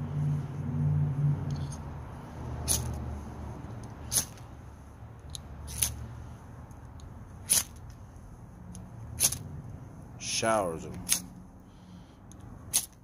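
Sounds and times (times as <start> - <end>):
fire steel scraped rasping: 7.4 - 7.8.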